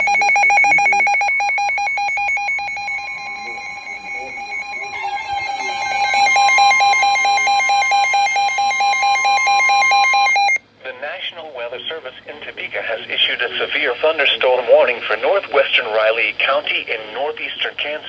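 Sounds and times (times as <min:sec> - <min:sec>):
pulsing electronic beeping alarm: 0:00.0 - 0:10.6
steady high tone: 0:00.0 - 0:10.6.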